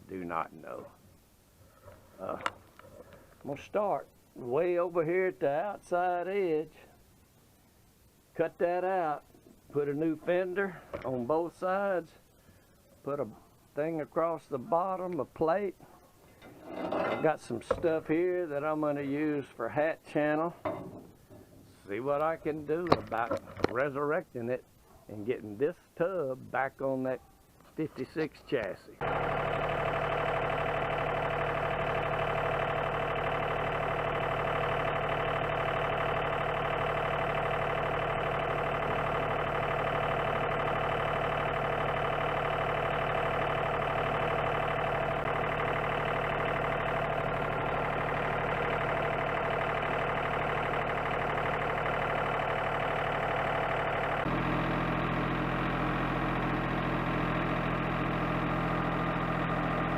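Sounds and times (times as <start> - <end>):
machine humming: 29.0 - 59.9.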